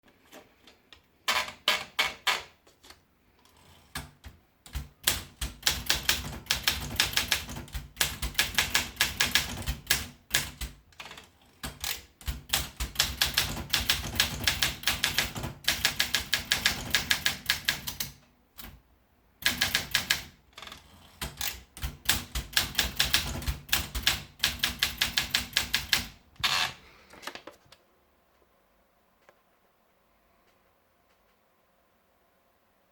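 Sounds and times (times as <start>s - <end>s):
typewriter keystrokes: 4.0s - 18.8s, 19.4s - 26.6s.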